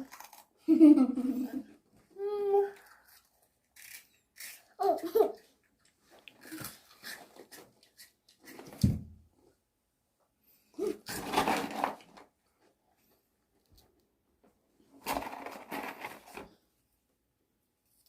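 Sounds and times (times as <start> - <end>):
children giggling: 0.6 - 1.7, 4.8 - 5.5.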